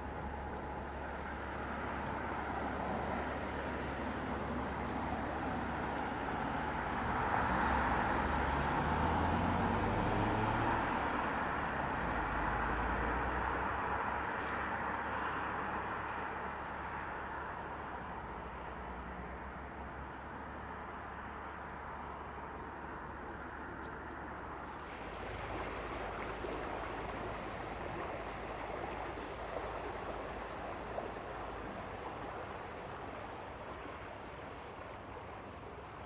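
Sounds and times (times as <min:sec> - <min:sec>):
engine passing by: 0:06.8 - 0:13.5, 0:24.7 - 0:36.0.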